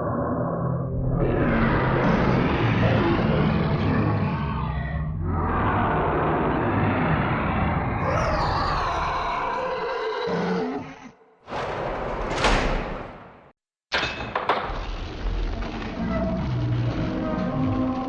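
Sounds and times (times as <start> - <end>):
low beast-like roar: 1.1 - 11.2, 15.3 - 18.0
sharp knocks: 11.5 - 14.8.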